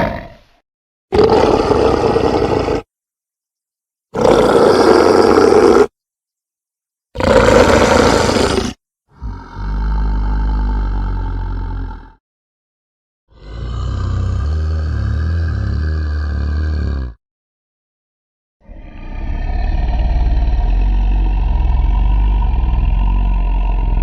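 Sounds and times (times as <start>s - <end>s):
giant ape roaring: 0.0s - 0.5s, 1.1s - 2.9s, 4.2s - 5.9s, 7.2s - 12.2s, 13.3s - 17.2s, 18.6s - 24.0s.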